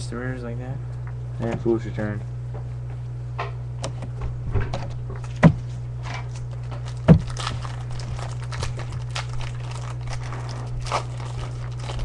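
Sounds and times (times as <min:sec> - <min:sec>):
low electrical hum: 0:00.0 - 0:12.0
dull thumps: 0:04.2 - 0:05.8, 0:07.0 - 0:07.7
trading cards rustling: 0:06.4 - 0:12.0.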